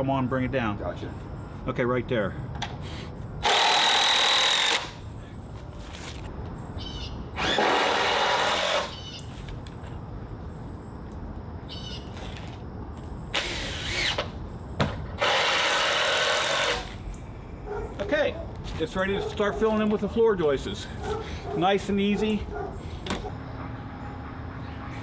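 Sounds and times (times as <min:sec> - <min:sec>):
drill driving screws into wood: 0:03.4 - 0:05.0, 0:07.4 - 0:09.0, 0:13.3 - 0:14.3, 0:15.2 - 0:17.0.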